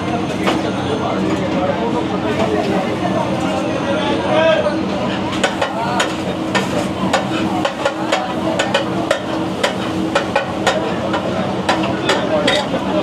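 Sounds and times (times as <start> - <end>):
metal spatula clanking on griddle: 5.4 - 12.8.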